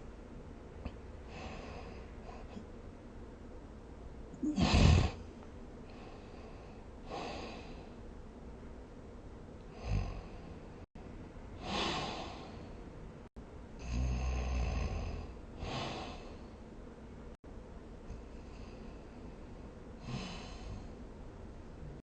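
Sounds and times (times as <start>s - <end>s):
person snoring: 4.4s - 5.2s, 9.7s - 10.6s, 13.8s - 16.4s, 20.0s - 20.9s.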